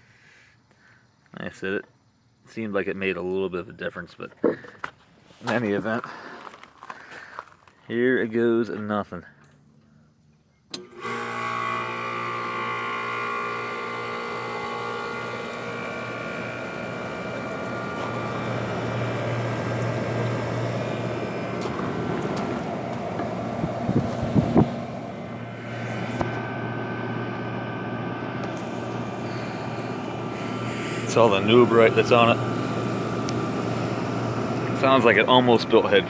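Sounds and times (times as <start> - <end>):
air conditioner humming and blowing: 10.8 - 36.0.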